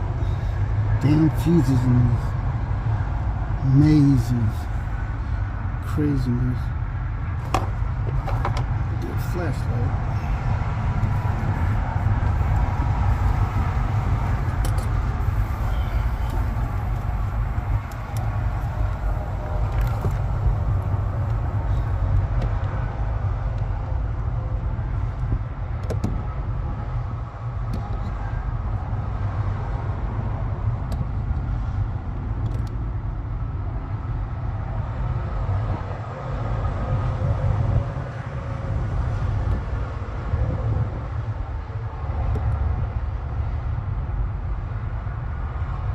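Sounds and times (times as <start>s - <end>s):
diesel truck engine idling: 6.6s - 22.4s
clicks and knocks in cab: 7.4s - 8.8s, 25.8s - 26.2s.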